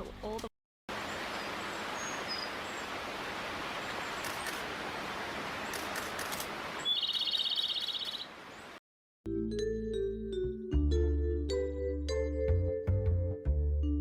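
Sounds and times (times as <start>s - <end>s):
steady outdoor hiss: 0.0s - 8.8s
faint bird chirps: 1.1s - 2.9s, 6.8s - 8.7s.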